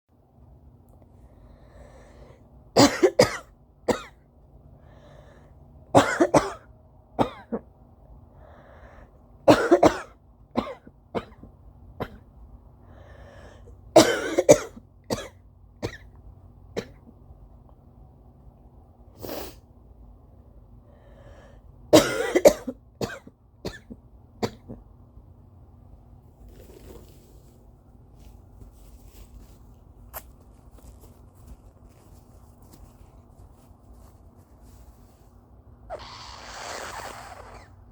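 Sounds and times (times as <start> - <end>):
soft breaths: 1.0 - 2.6, 4.7 - 5.7, 12.8 - 13.8, 20.3 - 21.8
person coughing: 2.8 - 4.2, 6.0 - 7.6, 9.5 - 11.4, 14.0 - 16.1, 22.0 - 24.8.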